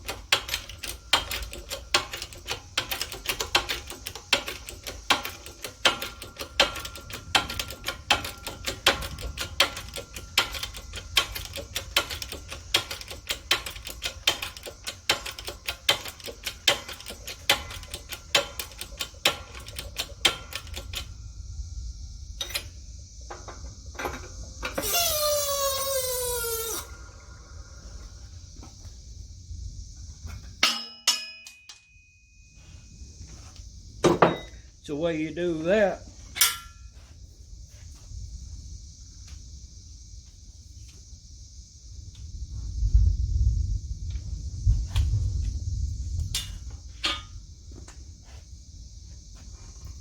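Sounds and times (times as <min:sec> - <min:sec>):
metal-on-metal clicking and knocking: 0:00.0 - 0:21.2, 0:30.6 - 0:31.9, 0:36.4 - 0:36.9, 0:46.4 - 0:47.4
metal squeal falling in pitch: 0:24.8 - 0:27.4.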